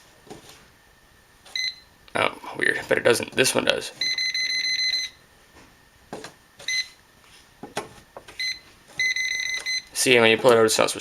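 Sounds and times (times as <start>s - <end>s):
voltage tester beeping: 1.5s - 1.9s, 4.0s - 5.2s, 6.6s - 7.0s, 8.3s - 10.0s.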